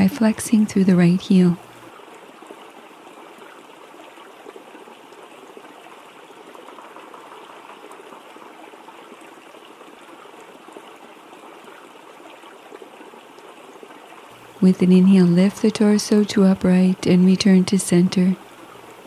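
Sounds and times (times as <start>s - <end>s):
waterfall running: 0.0s - 1.9s, 14.3s - 19.0s.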